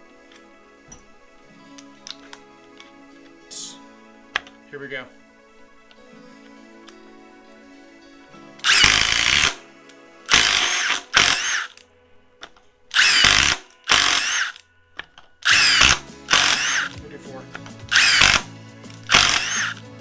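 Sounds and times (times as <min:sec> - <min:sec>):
impact driver boring into wood: 0:08.6 - 0:09.6, 0:10.3 - 0:11.8, 0:12.9 - 0:14.6, 0:15.4 - 0:17.0, 0:17.9 - 0:19.8.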